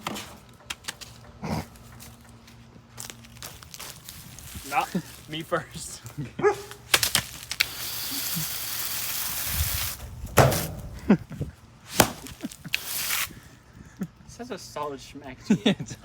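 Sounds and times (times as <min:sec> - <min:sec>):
steady hiss: 0:07.4 - 0:10.9, 0:12.0 - 0:13.4
broom smacking metal case: 0:10.2 - 0:11.2, 0:11.9 - 0:12.6.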